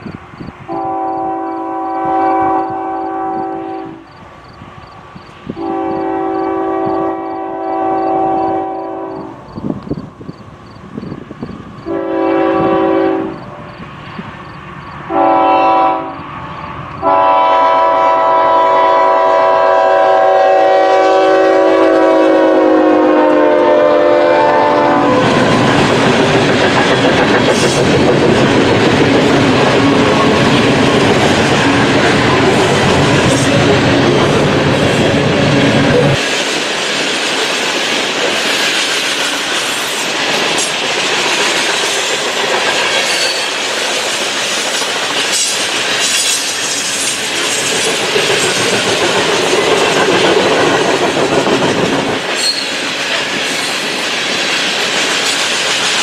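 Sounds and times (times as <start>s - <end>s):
train rumbling past: 0.0s - 56.0s
locomotive air horn blasts: 0.7s - 4.1s, 5.6s - 9.5s, 11.9s - 13.7s, 15.1s - 25.3s
wheels clacking on rails: 24.3s - 56.0s.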